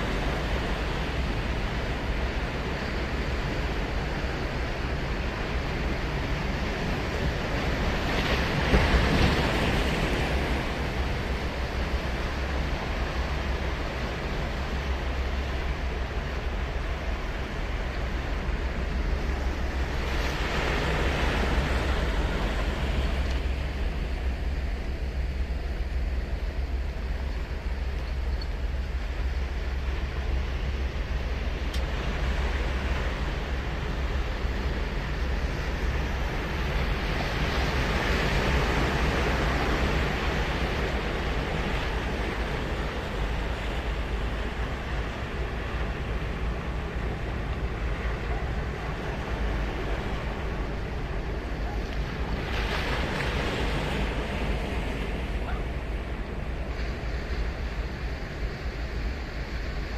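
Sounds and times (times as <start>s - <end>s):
ocean surf breaking on beach: 0.0s - 28.0s, 28.6s - 59.9s
wave crashing: 28.8s - 59.9s.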